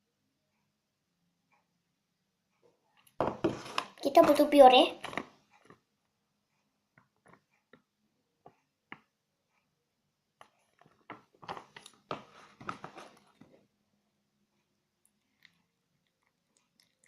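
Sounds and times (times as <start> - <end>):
slime squelching in a cup: 15.0 - 17.0.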